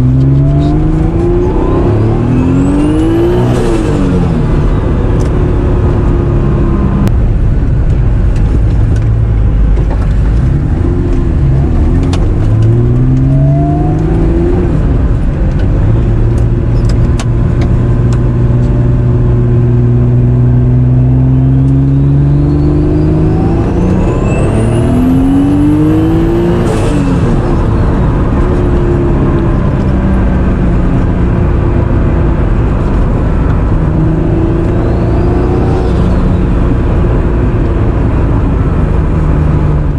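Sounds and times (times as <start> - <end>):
car engine accelerating: 0.0 - 39.9
high turbo whistle: 21.9 - 25.9.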